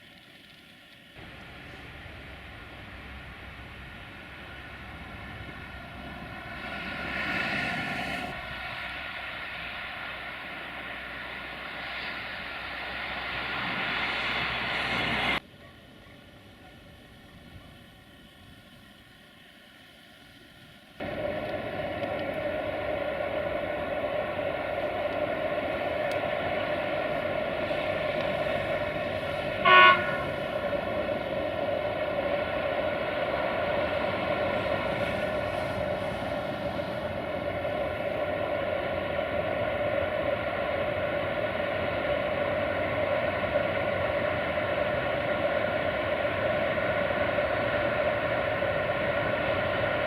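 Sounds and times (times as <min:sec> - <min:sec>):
electric locomotive humming: 0:00.0 - 0:50.0
locomotive horn toot: 0:29.5 - 0:30.6.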